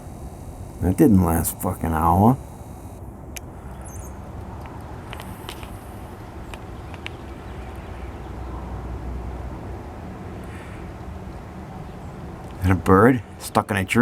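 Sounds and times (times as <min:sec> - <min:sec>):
faint clicks: 0:00.0 - 0:08.1.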